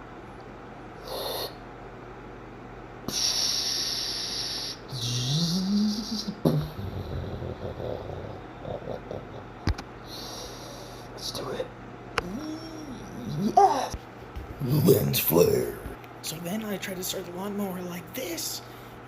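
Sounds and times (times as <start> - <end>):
person making hissing mouth sounds: 1.0 - 1.6, 3.1 - 8.4
hooting hum rising in pitch: 3.1 - 9.6, 12.2 - 14.0.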